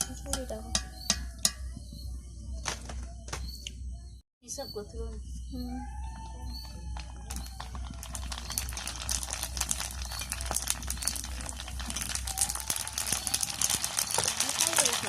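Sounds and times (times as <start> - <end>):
shells frying in hot oil: 0.0 - 1.6, 6.6 - 15.0.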